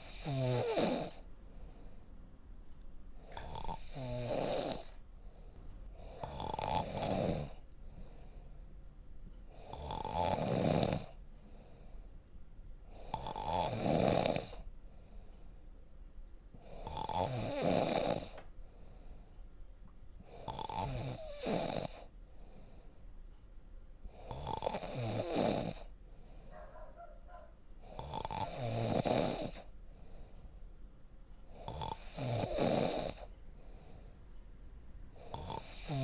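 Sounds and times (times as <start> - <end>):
person snoring: 0.0 - 1.3, 3.2 - 5.0, 6.0 - 7.6, 9.6 - 11.2, 13.0 - 14.6, 16.6 - 18.4, 20.3 - 22.1, 24.2 - 25.9, 27.8 - 29.7, 31.6 - 33.3, 35.2 - 36.0
quiet breaths: 0.0 - 36.0.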